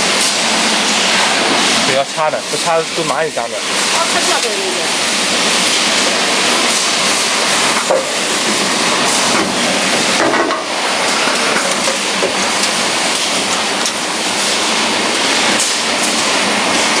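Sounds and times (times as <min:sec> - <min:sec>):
welding crackles and clicks: 0:00.0 - 0:17.0
welding machine hissing: 0:00.0 - 0:17.0.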